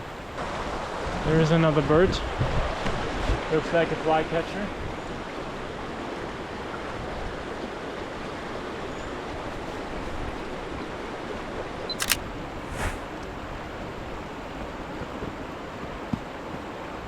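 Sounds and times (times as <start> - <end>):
camera shutter clicks: 12.0 - 13.0.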